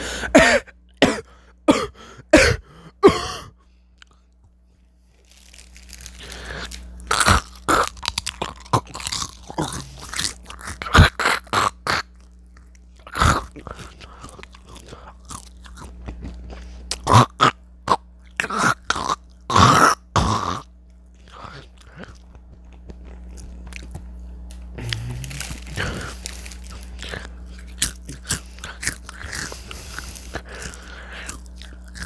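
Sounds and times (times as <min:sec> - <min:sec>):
person coughing: 0:00.0 - 0:03.6
chips crunching while chewed: 0:05.1 - 0:32.0.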